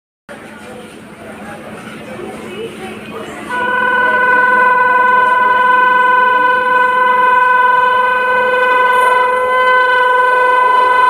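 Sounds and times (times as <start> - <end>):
locomotive horn long note: 3.5 - 11.0.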